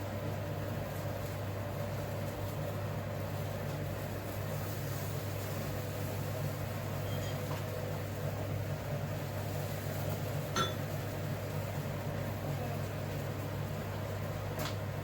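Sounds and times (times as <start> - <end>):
low hum of appliance or fan: 0.0 - 15.0
utensil clinking on dish: 10.5 - 10.8.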